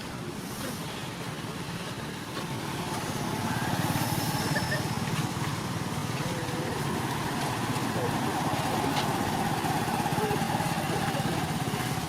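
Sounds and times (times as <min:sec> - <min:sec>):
small engine running: 0:03.0 - 0:12.0.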